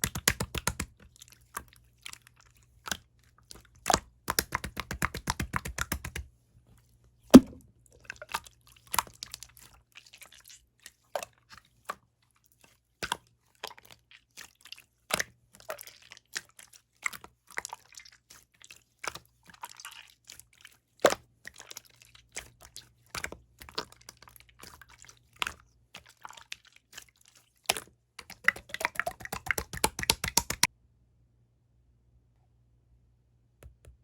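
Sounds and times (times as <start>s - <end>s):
slime popping clicks: 7.4s - 7.6s.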